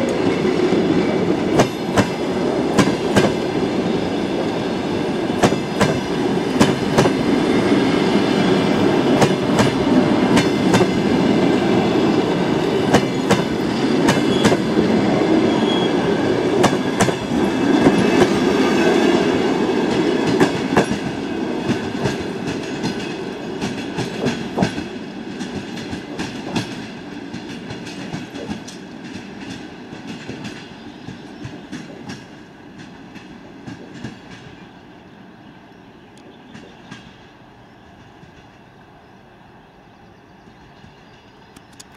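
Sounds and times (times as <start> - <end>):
train wheels clattering over rail joints: 1.4 - 3.4, 5.0 - 7.3, 9.0 - 11.5, 12.4 - 14.9, 16.5 - 18.6, 19.9 - 34.7.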